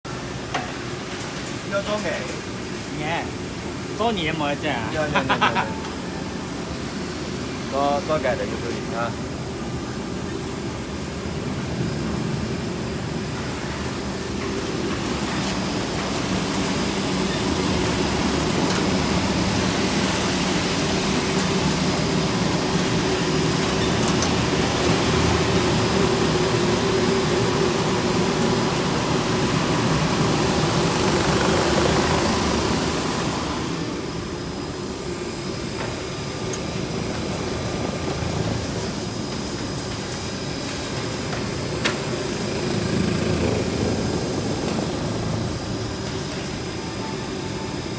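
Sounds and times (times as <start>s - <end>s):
loud hiss: 0.2s - 11.8s
sanding machine hum: 14.2s - 34.9s.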